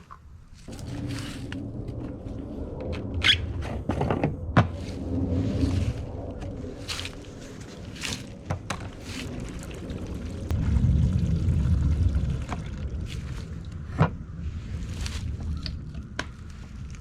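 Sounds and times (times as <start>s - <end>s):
gasoline pouring into fuel tank: 9.0s - 13.7s.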